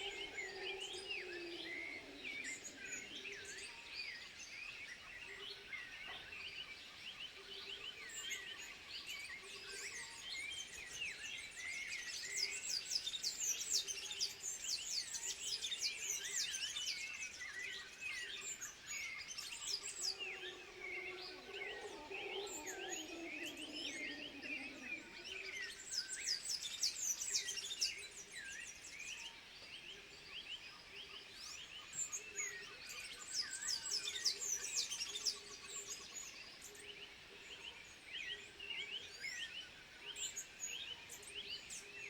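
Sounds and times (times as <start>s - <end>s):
high chirping animal calls: 19.8s - 25.7s.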